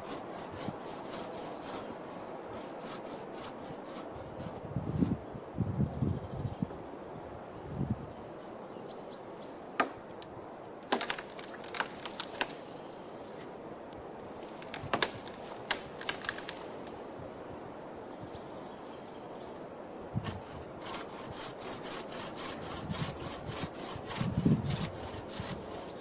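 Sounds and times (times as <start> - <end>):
branches snapping: 9.8 - 12.7, 14.2 - 17.0.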